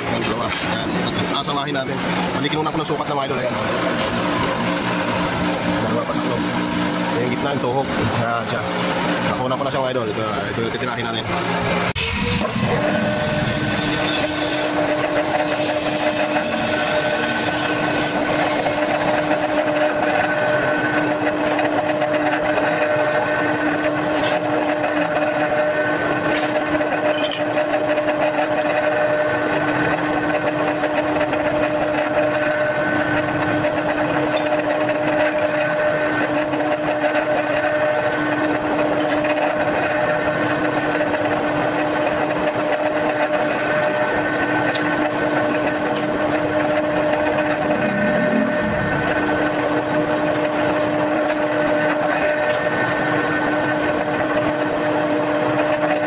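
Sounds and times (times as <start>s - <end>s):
electric power tool running: 9.9s - 24.7s.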